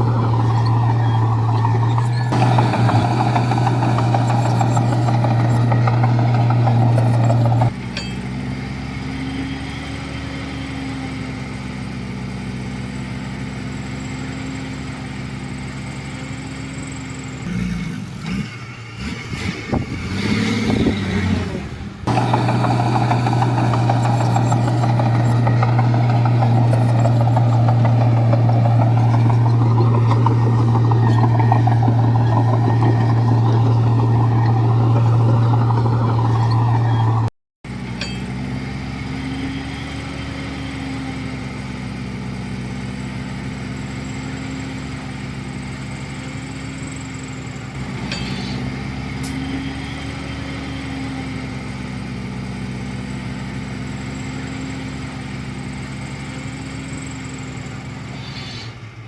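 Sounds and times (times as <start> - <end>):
heavy diesel engine running: 0.0 - 59.0.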